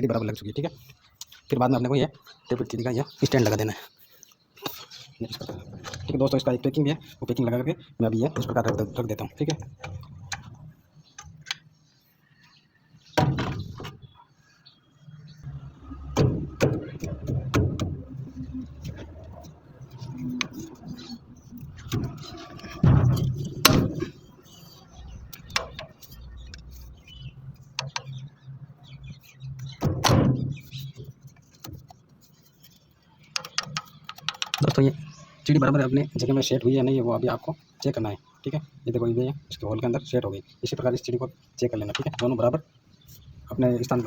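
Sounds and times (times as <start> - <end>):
metal engine parts knocking: 15.9 - 24.7
metal clank with scrape: 20.1 - 24.7.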